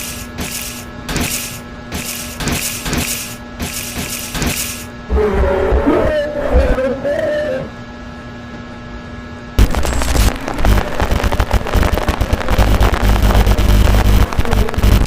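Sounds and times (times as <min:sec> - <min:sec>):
lightsaber hum: 0:00.0 - 0:07.8, 0:09.6 - 0:15.0
loud crackling distortion: 0:04.8 - 0:06.9, 0:09.6 - 0:15.0.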